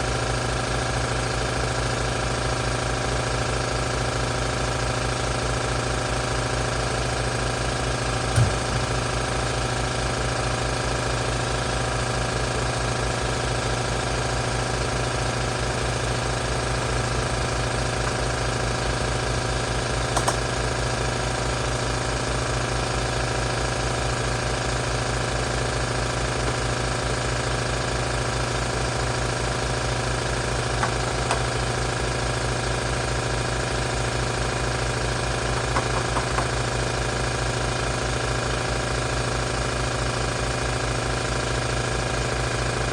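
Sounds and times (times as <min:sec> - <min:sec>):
air compressor pump pulsing: 0:04.2 - 0:11.6, 0:23.8 - 0:42.9.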